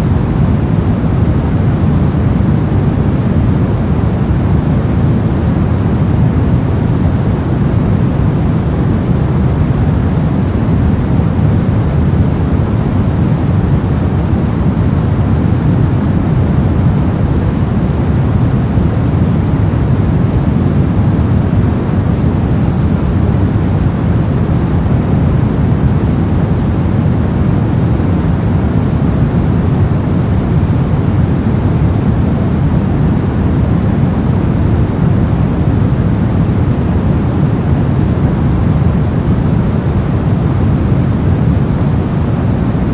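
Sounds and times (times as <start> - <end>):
brown noise: 0.0 - 42.9.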